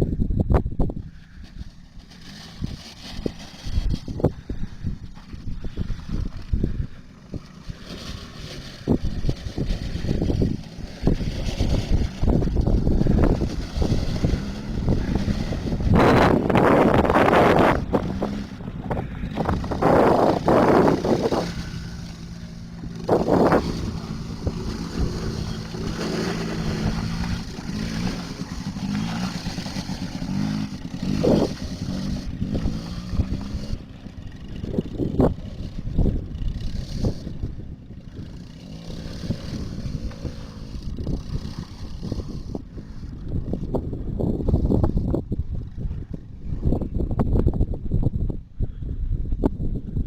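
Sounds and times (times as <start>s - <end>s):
atv engine running: 0.0s - 50.0s
wind buffeting microphone: 0.0s - 50.0s.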